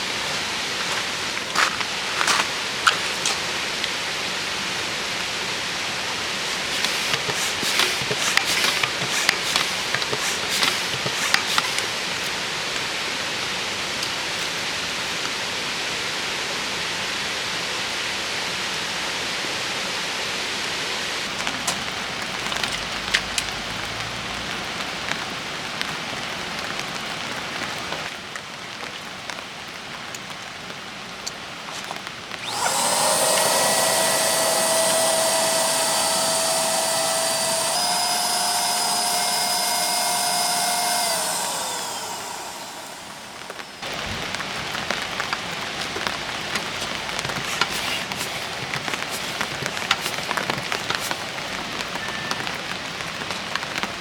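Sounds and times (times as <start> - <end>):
steady rainfall: 0.0 - 9.2, 11.1 - 32.5, 43.4 - 54.0.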